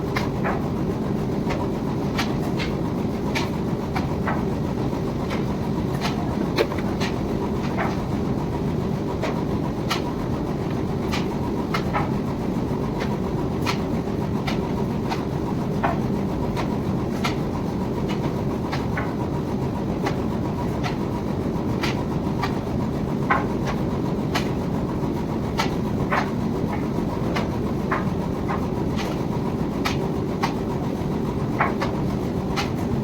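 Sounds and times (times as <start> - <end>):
machinery rumbling: 5.1 - 8.0.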